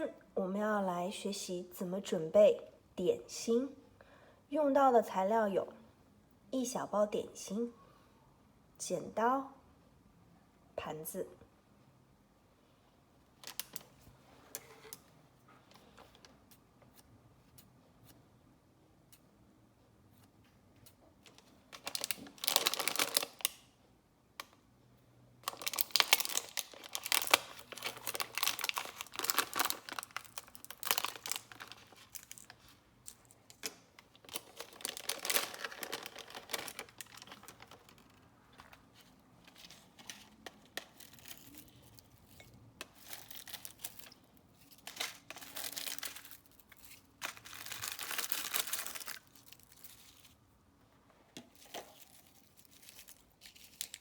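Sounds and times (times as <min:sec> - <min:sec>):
plastic packet crinkling: 0:21.2 - 0:23.6, 0:25.4 - 0:50.4, 0:51.6 - 0:54.0.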